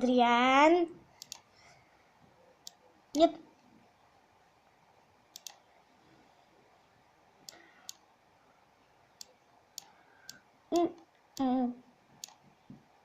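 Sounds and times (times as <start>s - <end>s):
sharp clicks: 1.2s - 1.5s, 5.3s - 5.6s, 12.2s - 12.4s.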